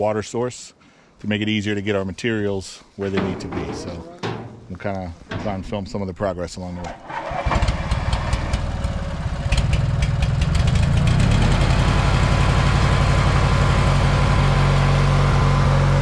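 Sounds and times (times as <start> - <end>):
diesel engine running: 7.2 - 16.0.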